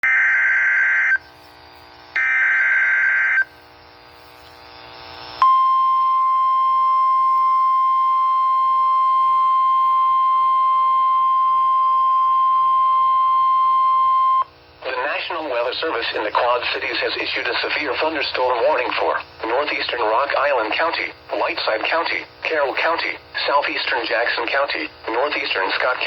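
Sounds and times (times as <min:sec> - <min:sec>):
steady warning alarm tone: 0:00.0 - 0:26.0.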